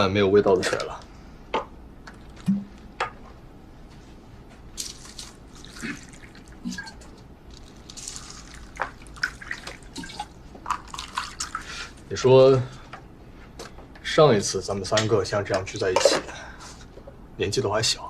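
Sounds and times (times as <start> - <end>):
tea pouring into cups: 4.8 - 11.9.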